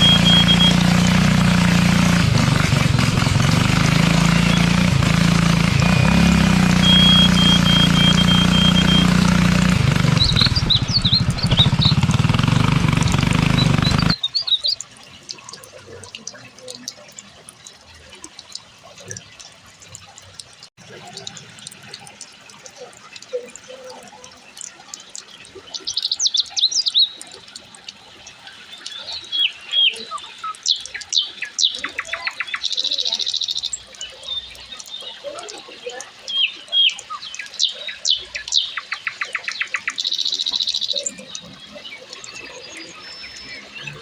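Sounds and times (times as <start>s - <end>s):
birds chirping and whistling: 0.0s - 14.8s, 25.4s - 27.4s, 28.8s - 35.6s, 36.2s - 44.0s
bird song of ticking notes and trill: 0.0s - 44.0s.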